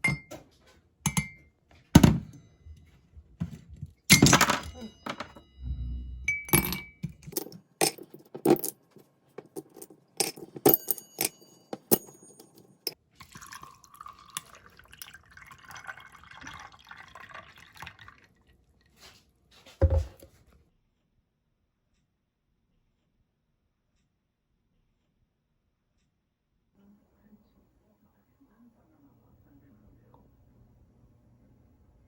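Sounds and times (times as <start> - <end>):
glassware clinking: 0.0 - 0.4, 1.1 - 1.4, 3.4 - 5.6, 6.3 - 8.7, 9.4 - 18.0
liquid pouring: 13.2 - 19.0.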